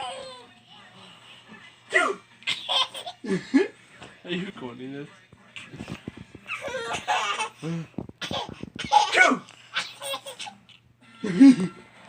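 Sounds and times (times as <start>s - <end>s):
baby laughing: 2.5s - 3.3s, 6.5s - 10.6s.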